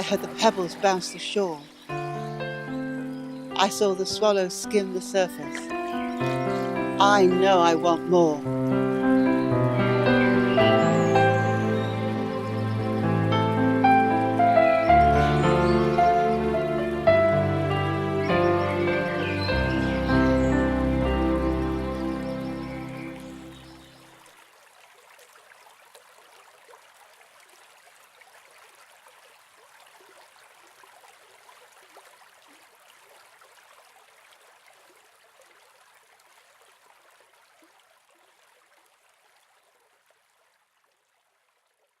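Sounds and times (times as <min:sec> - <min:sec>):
music: 0:00.0 - 0:23.9
stream trickling: 0:00.0 - 0:42.0.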